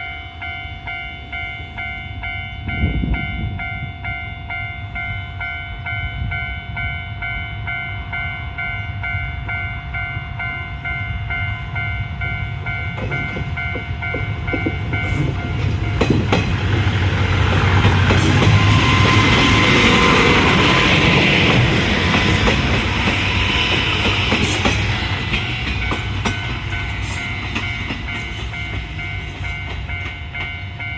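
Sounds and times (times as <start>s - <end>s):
train passing rumble: 1.2s - 30.9s
level crossing alarm clanging: 12.2s - 30.9s
train wheel clicks: 12.9s - 30.9s.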